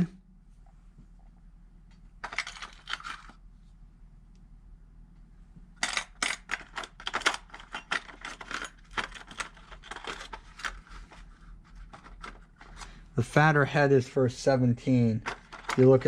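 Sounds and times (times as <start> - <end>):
small metal parts clinking: 2.2 - 3.4, 5.8 - 10.8, 15.2 - 16.0.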